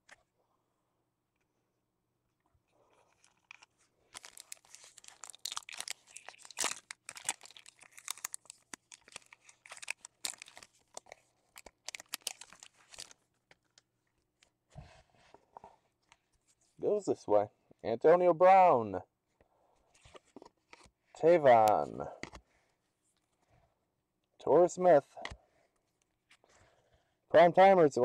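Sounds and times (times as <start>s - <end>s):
wrapper tearing and crinkling: 3.2s - 13.8s.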